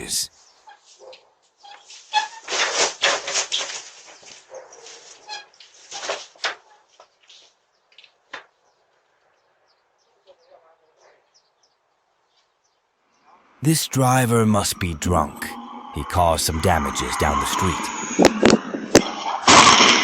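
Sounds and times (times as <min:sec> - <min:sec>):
dog barking: 0:04.5 - 0:04.9.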